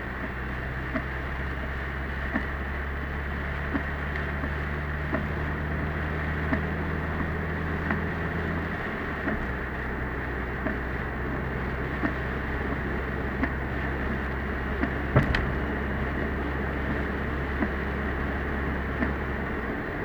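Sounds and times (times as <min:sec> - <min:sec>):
car engine and road hum: 0:00.0 - 0:20.0
windshield wipers knocking: 0:14.5 - 0:18.0.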